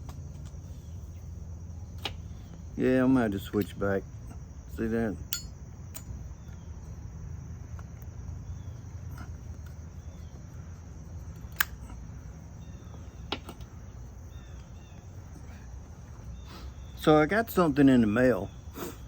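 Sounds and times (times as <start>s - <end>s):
insects droning: 0.0s - 19.0s
sharp clicks: 11.3s - 12.0s.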